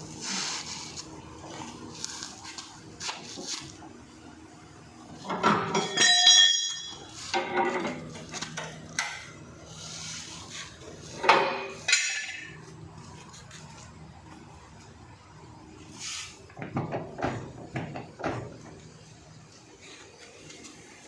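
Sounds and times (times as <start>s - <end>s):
metal objects clanking: 5.2s - 8.1s
metallic clink: 5.7s - 7.2s.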